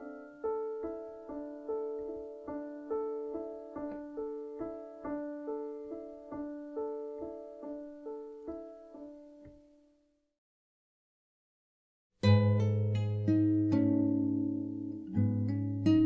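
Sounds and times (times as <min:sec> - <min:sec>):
piano single notes repeating: 0:00.0 - 0:09.8.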